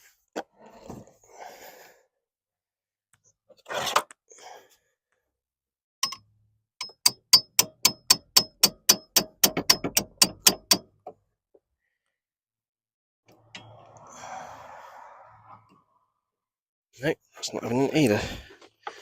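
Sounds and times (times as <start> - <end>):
hammer tapping metal socket: 6.0 - 6.2, 6.8 - 10.9.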